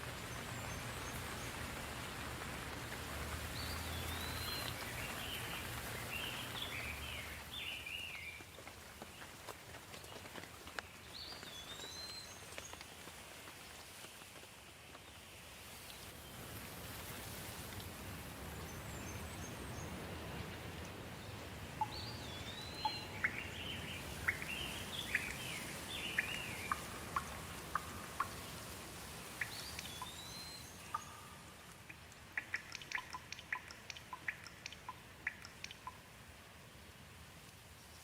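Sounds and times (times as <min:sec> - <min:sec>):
steady rain falling: 0:00.0 - 0:38.0
birds whistling and chirping: 0:21.8 - 0:27.9, 0:29.4 - 0:31.3.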